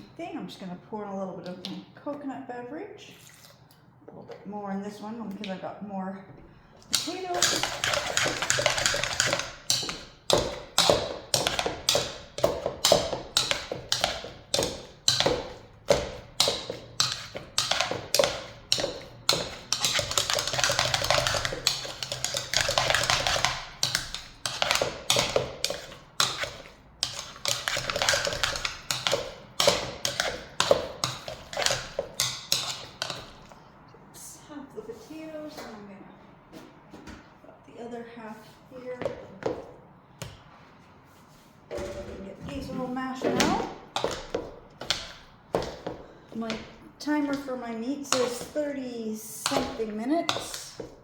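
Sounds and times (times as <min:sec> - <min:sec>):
potato masher knocking pot: 0:06.9 - 0:33.5, 0:43.4 - 0:48.6, 0:49.4 - 0:51.0.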